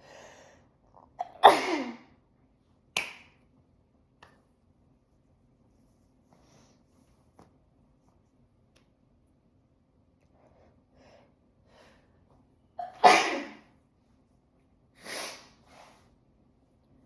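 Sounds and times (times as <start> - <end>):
faint in-breaths: 0.0 - 0.8, 10.3 - 12.3
person sneezing: 1.2 - 2.1, 12.8 - 13.7.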